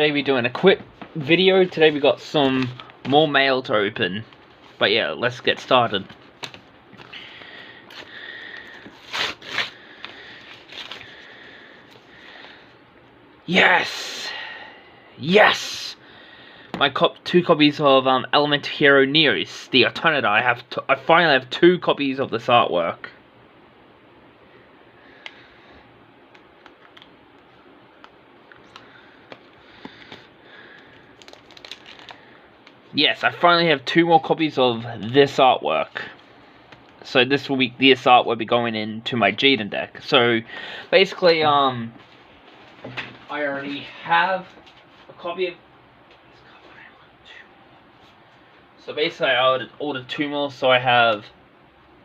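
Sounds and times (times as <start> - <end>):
low steady hiss: 0.0 - 52.0
plastic packaging rustling: 4.2 - 11.3, 28.7 - 32.9
package being opened: 28.0 - 32.8.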